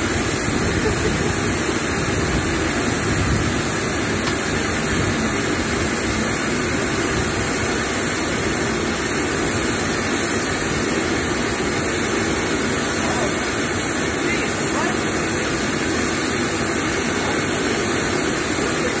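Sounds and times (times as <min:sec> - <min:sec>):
high steady whine: 0:00.0 - 0:19.0
turbine machinery roar: 0:00.0 - 0:19.0.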